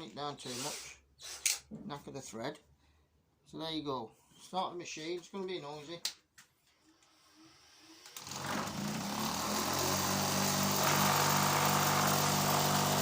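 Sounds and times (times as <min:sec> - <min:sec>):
bench grinder motor whirring: 0:07.0 - 0:13.0.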